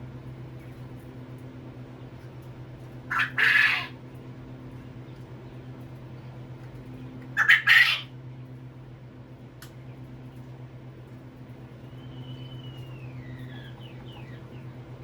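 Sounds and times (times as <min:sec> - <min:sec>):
steady low hum: 0:00.0 - 0:15.0
quail calling: 0:03.1 - 0:04.0, 0:07.4 - 0:08.2, 0:12.0 - 0:14.8.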